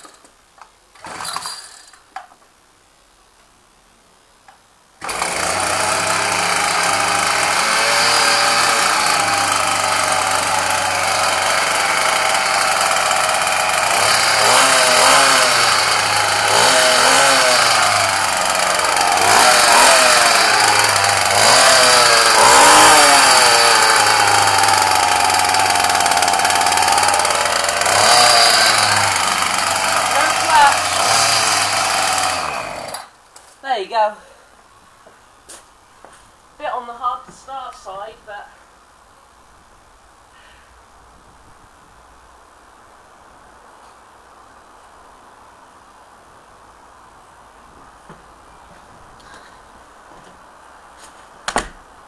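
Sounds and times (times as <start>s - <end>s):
recoil starter pull: 1.0s - 2.0s, 5.0s - 33.1s
two-stroke engine running: 5.0s - 33.1s.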